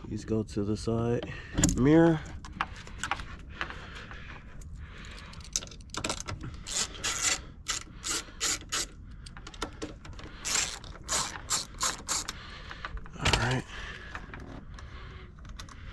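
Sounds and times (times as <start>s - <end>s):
ratchet wrench clicking: 6.6s - 9.0s, 10.4s - 12.4s.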